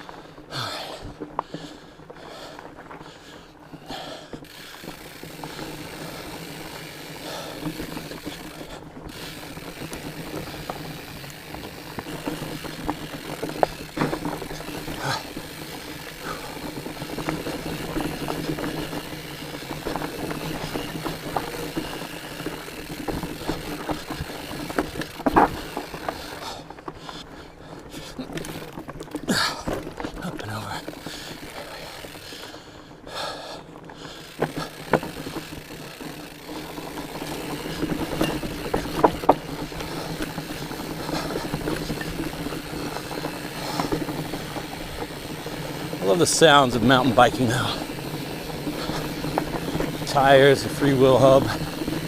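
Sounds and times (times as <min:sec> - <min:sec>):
bike rattling: 0:00.0 - 0:52.0
bike tyres rolling over dirt: 0:00.0 - 0:52.0.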